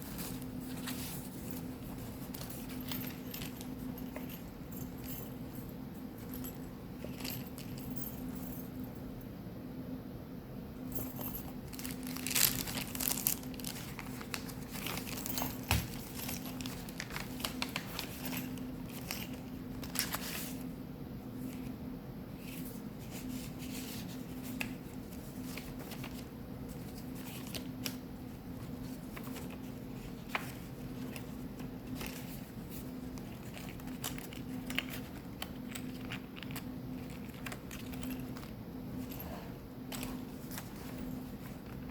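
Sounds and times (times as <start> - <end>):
paper rustling and crinkling: 0.0 - 4.4, 11.6 - 20.7, 22.4 - 39.3, 39.9 - 41.9
steady low hum: 0.0 - 41.9.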